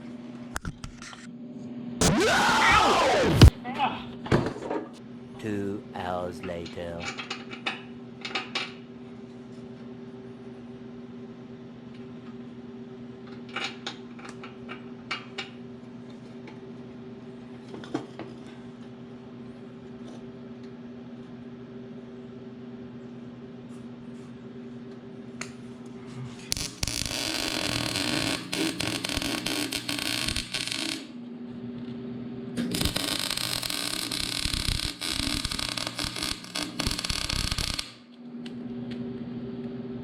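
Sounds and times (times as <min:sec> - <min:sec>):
low electrical hum: 0:01.1 - 0:40.0
arc welding crackling: 0:02.0 - 0:03.5, 0:26.5 - 0:31.1, 0:32.6 - 0:38.0.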